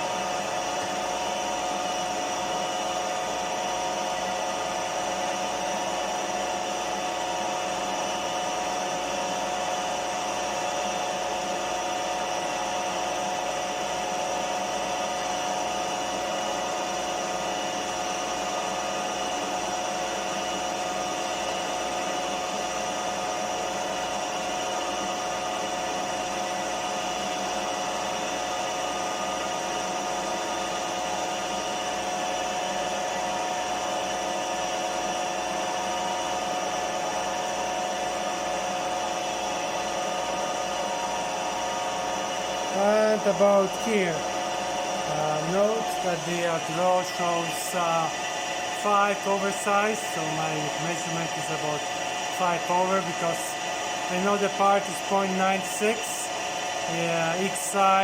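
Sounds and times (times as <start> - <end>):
milling machine motor humming: 0.0 - 58.0
steady whine: 28.3 - 58.0.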